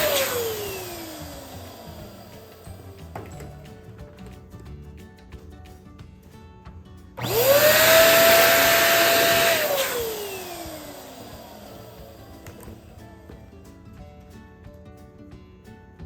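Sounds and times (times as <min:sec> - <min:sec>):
electric air pump whining: 0:00.0 - 0:04.0, 0:07.2 - 0:13.5.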